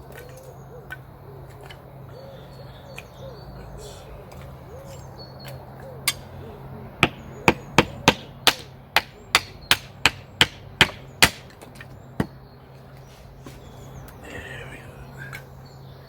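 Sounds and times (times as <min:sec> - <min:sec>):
wood chopping strikes: 0:07.0 - 0:12.4.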